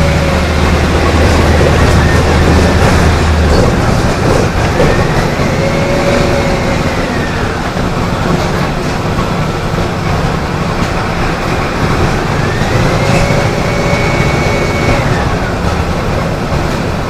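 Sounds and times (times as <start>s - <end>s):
diesel bus engine droning: 0.0s - 17.0s.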